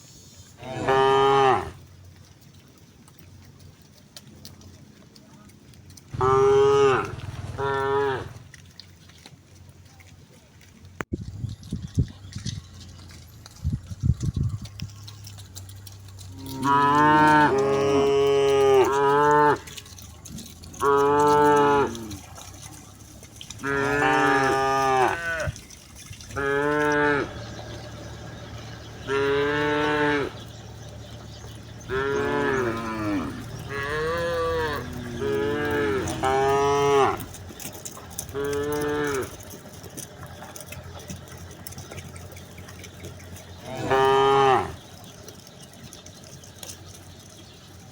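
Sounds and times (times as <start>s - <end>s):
cattle mooing: 0.6s - 1.8s, 6.1s - 8.5s, 15.3s - 25.7s, 26.3s - 45.2s.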